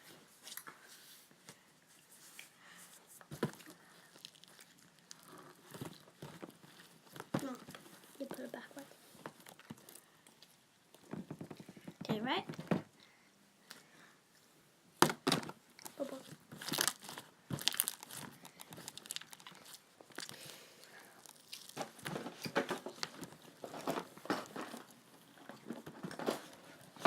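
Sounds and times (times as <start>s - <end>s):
hands squeezing slime: 3.6s - 5.6s, 15.8s - 21.8s.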